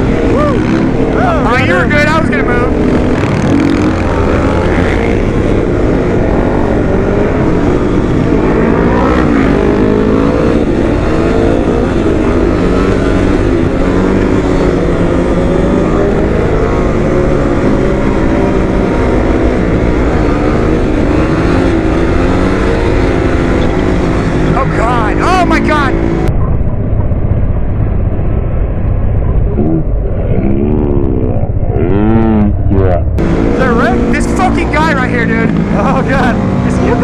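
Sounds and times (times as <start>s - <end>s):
motorcycle engine revving: 0.0s - 37.0s
wind rumble on microphone: 25.8s - 37.0s.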